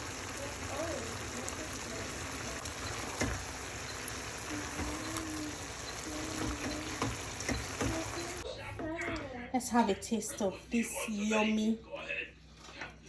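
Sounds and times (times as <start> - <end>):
sauce simmering and bubbling: 0.0 - 8.4.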